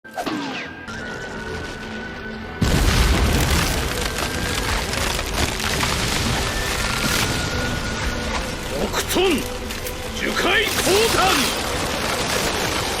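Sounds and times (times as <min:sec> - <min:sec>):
background music held tone: 0:00.1 - 0:13.0
heavy rumbling crash: 0:02.6 - 0:07.8.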